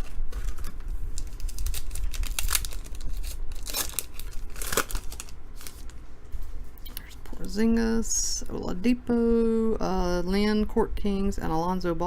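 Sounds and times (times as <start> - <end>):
card pack wrapper crinkling: 0.0 - 6.0.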